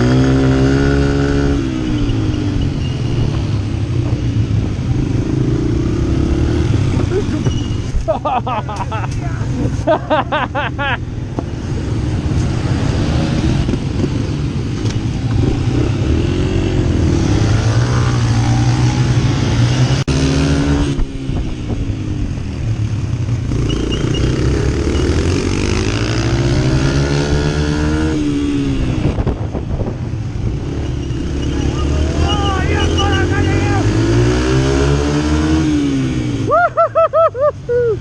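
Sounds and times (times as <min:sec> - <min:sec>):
dirt bike engine revving: 0:00.0 - 0:07.8, 0:11.6 - 0:21.5, 0:23.2 - 0:29.3, 0:30.4 - 0:36.5.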